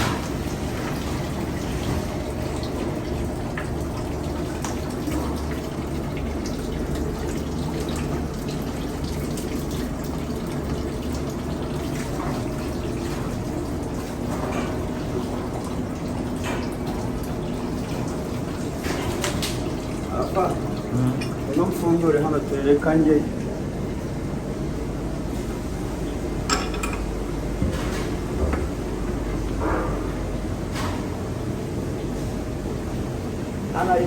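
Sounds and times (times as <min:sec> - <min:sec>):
water running in a drain: 0:00.0 - 0:24.2.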